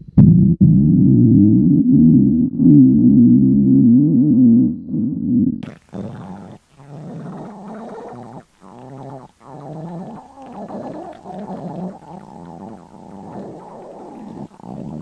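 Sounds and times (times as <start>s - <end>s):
stomach growling: 5.6s - 15.0s.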